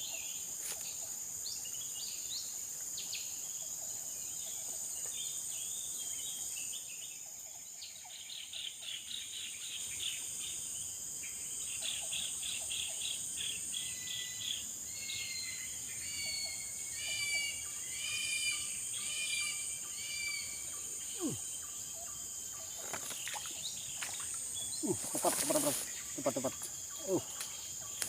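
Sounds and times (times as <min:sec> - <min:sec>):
high insect buzz: 0:17.4 - 0:28.0.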